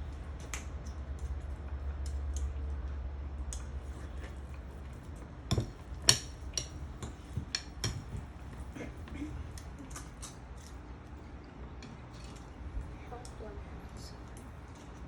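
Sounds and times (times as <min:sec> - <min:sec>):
utensils tapping a bowl: 0:05.5 - 0:08.7.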